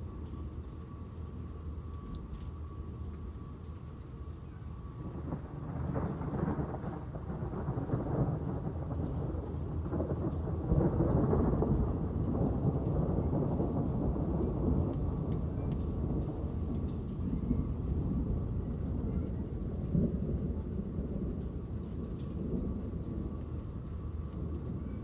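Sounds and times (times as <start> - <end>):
steady rain: 0.0 - 25.0
rolling thunder: 5.0 - 25.0.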